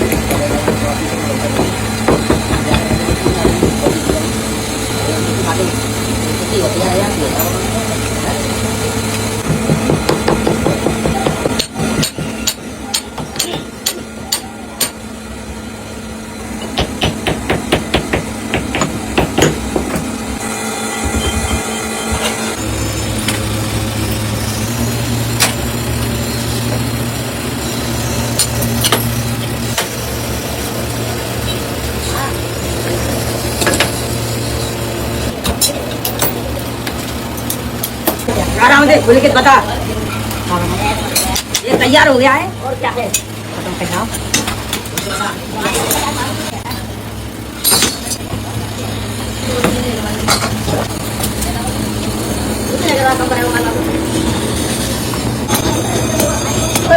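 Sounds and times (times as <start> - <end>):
hammer striking metal: 9.4 - 15.0, 16.7 - 20.1.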